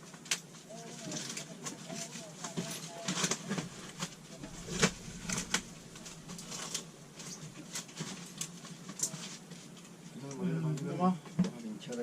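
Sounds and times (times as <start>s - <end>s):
low background noise: 0.0s - 12.0s.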